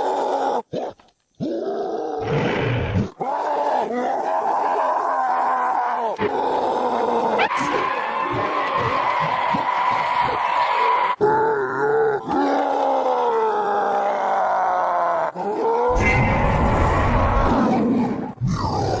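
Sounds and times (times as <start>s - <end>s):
low rough creature roar: 11.1s - 19.0s
creature grunting calls: 11.2s - 19.0s.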